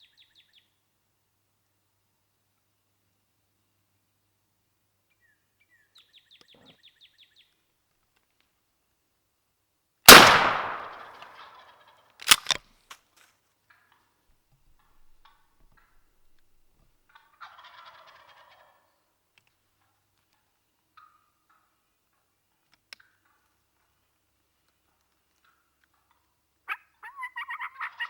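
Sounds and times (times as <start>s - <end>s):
shotgun blast echo: 10.1s - 11.3s
turkey gobbling: 17.4s - 18.7s, 26.7s - 28.0s.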